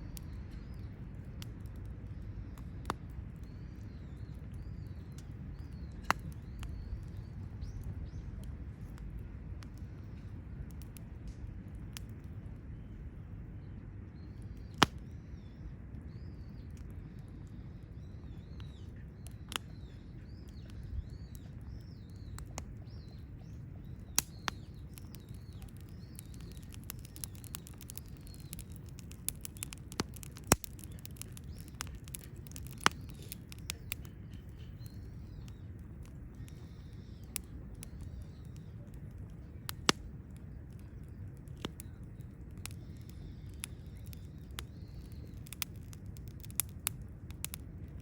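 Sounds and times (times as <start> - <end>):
campfire burning: 0.0 - 48.0
fire crackling pops: 0.0 - 48.0.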